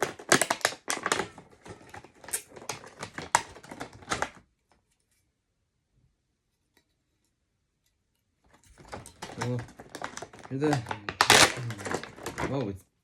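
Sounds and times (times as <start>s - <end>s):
plastic packaging crackling: 0.0s - 4.4s, 8.8s - 12.8s.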